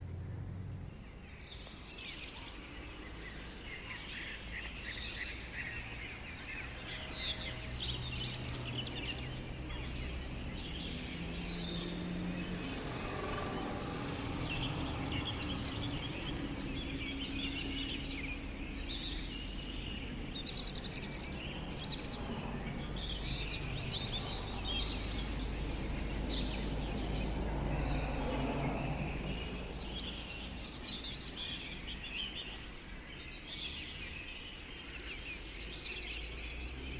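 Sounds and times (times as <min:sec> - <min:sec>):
low background rumble: 0:00.0 - 0:02.1
small birds chirping: 0:00.0 - 0:36.9.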